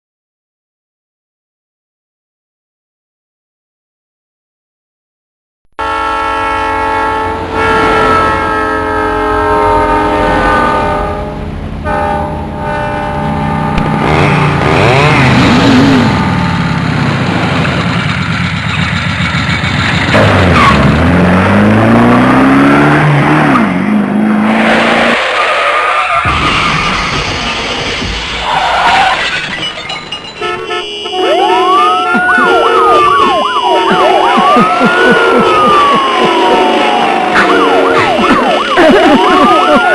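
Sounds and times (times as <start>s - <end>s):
loud horn chord: 5.8s - 16.5s, 30.4s - 38.2s
emergency siren wailing: 30.8s - 39.9s.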